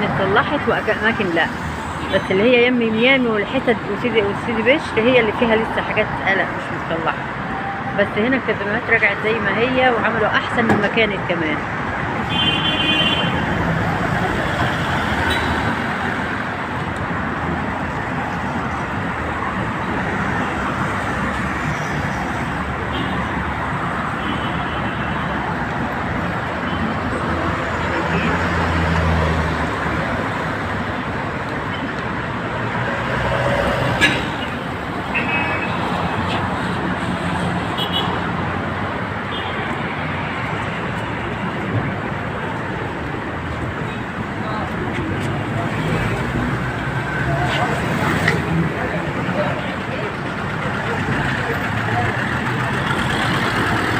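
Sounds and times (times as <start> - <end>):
cars passing: 0.0 - 53.9
road traffic: 0.0 - 53.9
car horn: 12.3 - 13.4, 35.1 - 35.9, 37.8 - 38.2.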